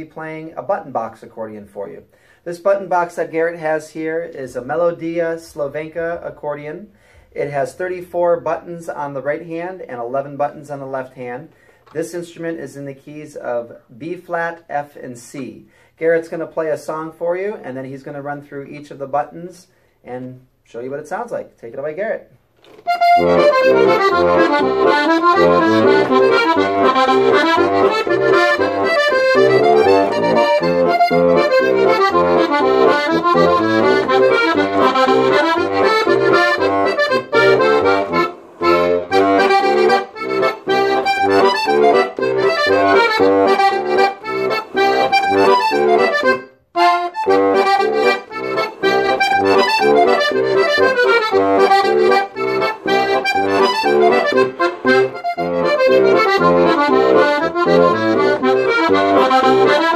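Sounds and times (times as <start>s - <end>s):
button accordion playing lively song: 22.8s - 59.9s.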